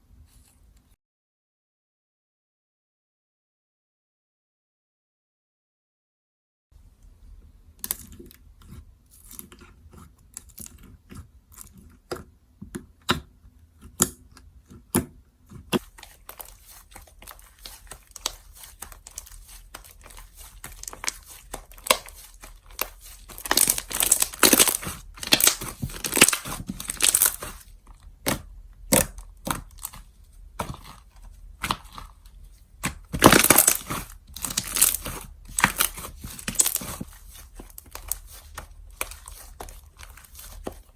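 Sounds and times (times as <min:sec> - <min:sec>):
slime squished by hand: 0:15.7 - 0:32.2, 0:32.8 - 0:40.9.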